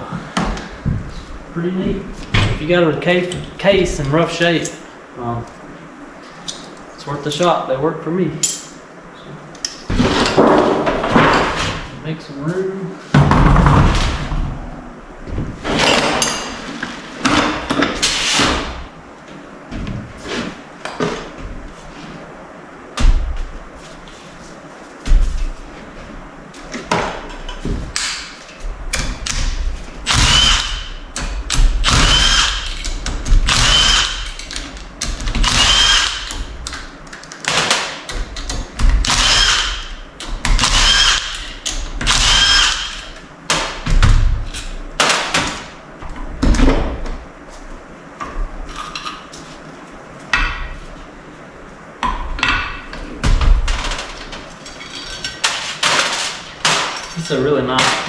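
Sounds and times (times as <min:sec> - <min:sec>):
power tool whining: 0:30.1 - 0:31.0, 0:31.8 - 0:34.7, 0:35.4 - 0:36.5, 0:39.0 - 0:40.0, 0:40.6 - 0:43.2.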